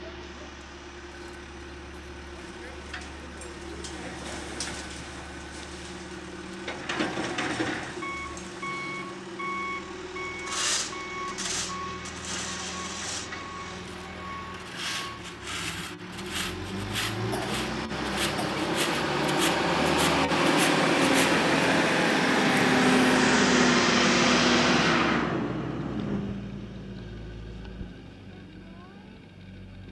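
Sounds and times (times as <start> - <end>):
backhoe diesel engine running: 0.0 - 24.3
reversing alarm beeping: 8.0 - 15.8.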